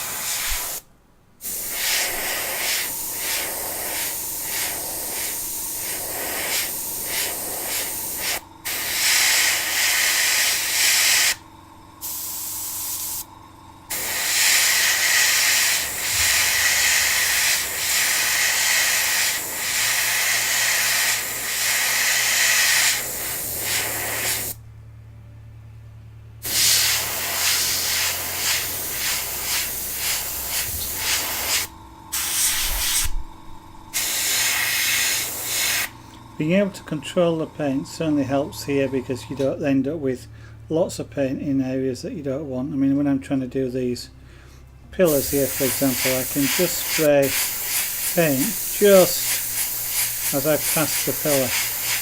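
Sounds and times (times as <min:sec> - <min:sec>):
airbrush spraying paint: 0:00.0 - 0:11.4, 0:12.0 - 0:24.6, 0:26.4 - 0:33.2, 0:33.9 - 0:36.0, 0:45.0 - 0:52.0.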